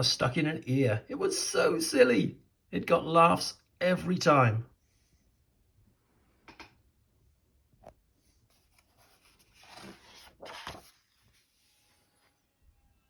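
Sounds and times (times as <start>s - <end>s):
book pages rustling: 8.2s - 12.4s.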